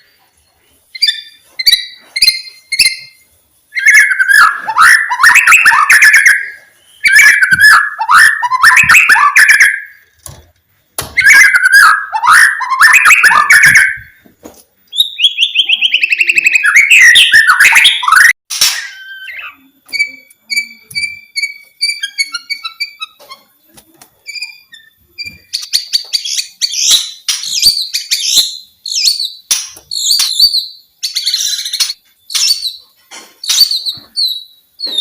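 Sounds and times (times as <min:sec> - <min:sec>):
bird singing warbling phrases: 0:03.8 - 0:10.1, 0:11.2 - 0:14.2, 0:14.9 - 0:23.6.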